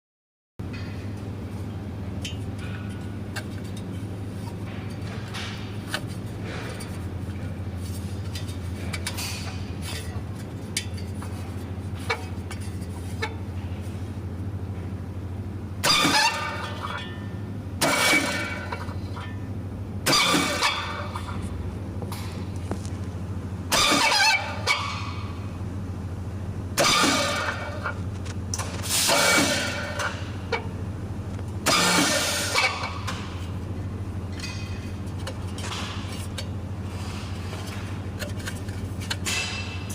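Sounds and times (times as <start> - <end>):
electric fan humming: 0.6 - 39.9
fan cover clinking and rattling: 34.3 - 36.5.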